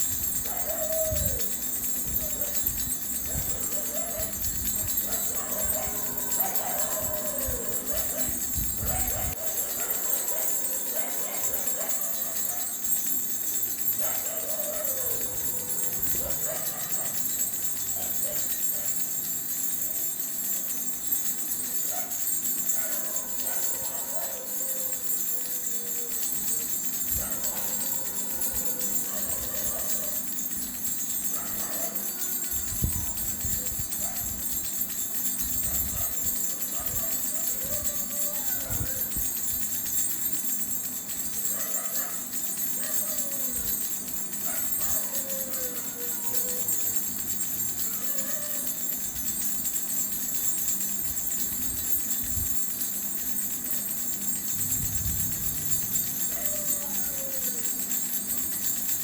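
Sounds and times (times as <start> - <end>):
hand rattle jingling: 0.0 - 59.0.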